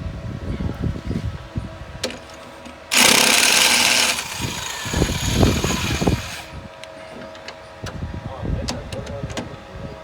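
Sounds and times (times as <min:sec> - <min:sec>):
power tool burst: 0:02.9 - 0:06.6.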